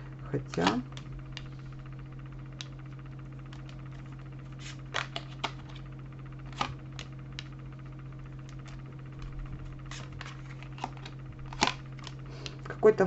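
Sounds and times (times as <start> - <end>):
low electrical hum: 0.0 - 13.0
cards clicking and tapping: 0.4 - 1.5, 4.7 - 7.5, 9.9 - 12.6.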